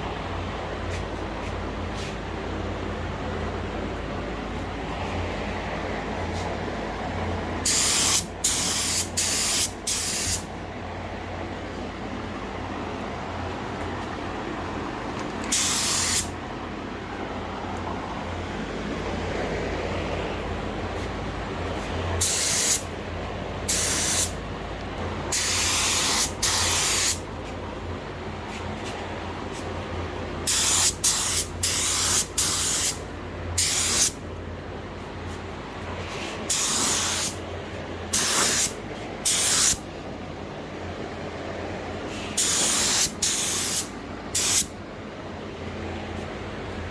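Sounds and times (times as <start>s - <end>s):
steady low hum: 0.0s - 46.9s
spray gun hissing: 7.6s - 10.5s, 15.5s - 16.3s, 22.2s - 22.9s, 23.7s - 24.3s, 25.3s - 27.2s, 30.5s - 33.0s, 33.6s - 34.2s, 36.5s - 37.4s, 38.1s - 39.8s, 42.4s - 44.7s.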